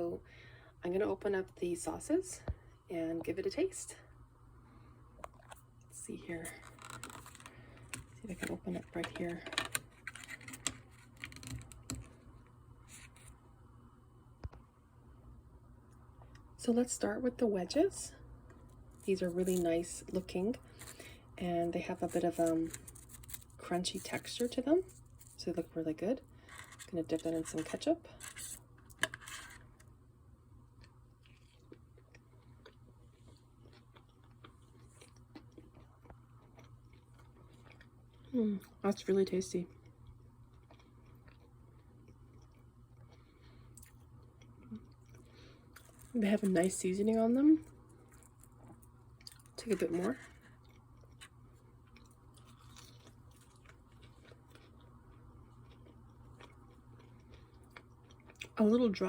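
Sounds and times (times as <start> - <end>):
crunchy chewing: 30.8 - 38.3, 39.7 - 46.7, 47.6 - 58.6.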